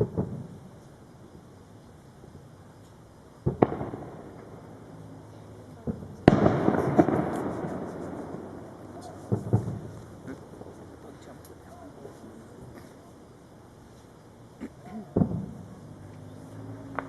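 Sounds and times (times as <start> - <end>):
distant firework booms: 0.0 - 0.7, 3.4 - 11.4, 15.1 - 15.8
rolling rumble: 0.0 - 13.8
faint firework crackling: 0.0 - 17.0.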